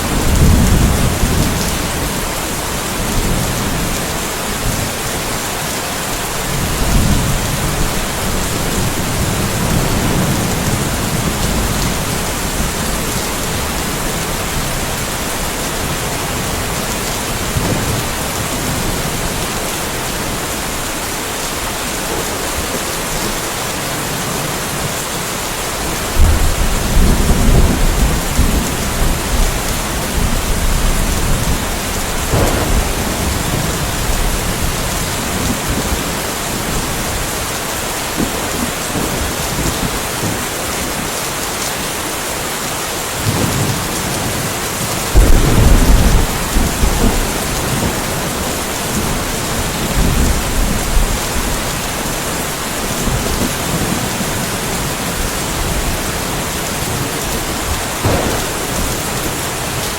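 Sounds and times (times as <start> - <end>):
thunder rumbling: 0.0 - 5.0, 6.4 - 25.0, 25.8 - 37.4, 45.1 - 59.9
steady rain falling: 0.0 - 59.9.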